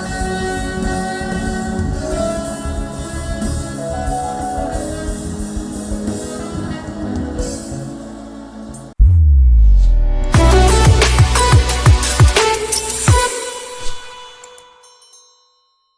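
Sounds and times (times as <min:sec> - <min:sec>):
bass: 0:00.0 - 0:13.3
held chords: 0:09.1 - 0:14.9
drum kit beat: 0:10.3 - 0:14.5.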